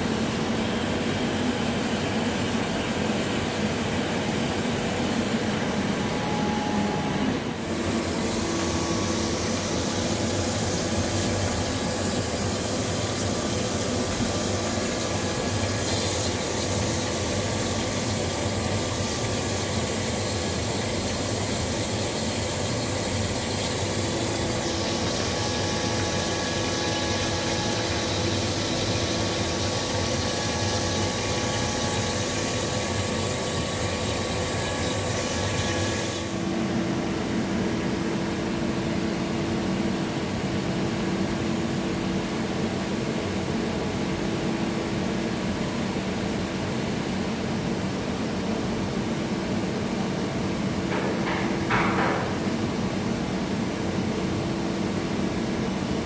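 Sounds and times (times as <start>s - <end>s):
machine hum with held tones: 0.0s - 56.0s
machine hiss: 7.7s - 36.3s.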